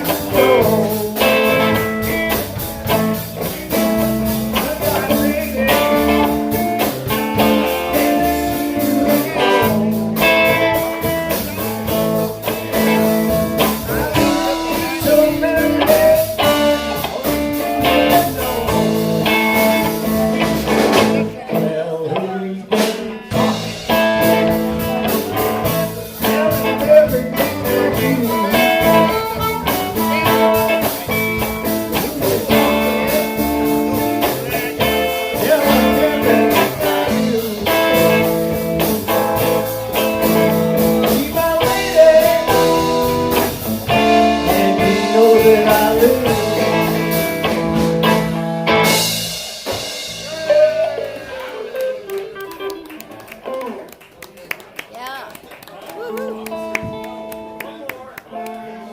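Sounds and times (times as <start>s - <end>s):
electric blues band playing: 0.0s - 58.9s
blues harmonica: 23.3s - 49.2s.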